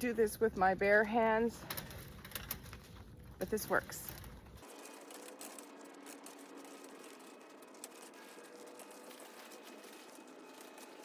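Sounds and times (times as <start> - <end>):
faint metallic scraping: 1.6 - 11.0.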